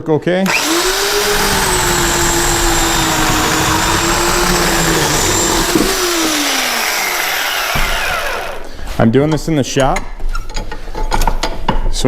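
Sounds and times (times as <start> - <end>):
electric chainsaw running: 0.4 - 8.8.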